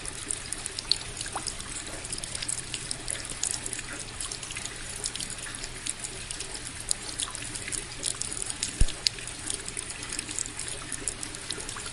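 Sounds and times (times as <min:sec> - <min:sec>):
fountain water trickling: 0:00.0 - 0:11.9
water drips ticking: 0:00.0 - 0:11.9
low thump: 0:08.8 - 0:09.0.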